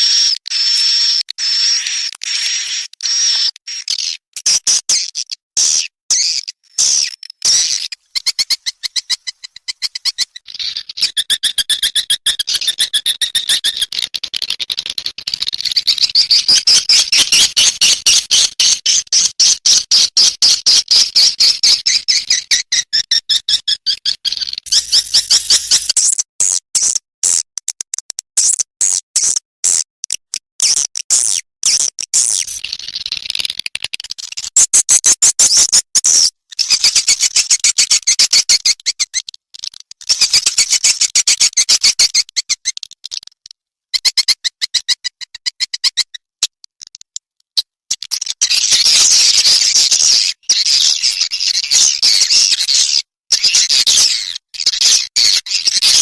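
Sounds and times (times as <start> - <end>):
high twittering chirps: 0.0 - 26.1
rapid bird clicks: 12.0 - 16.7, 26.8 - 34.5, 36.7 - 44.8.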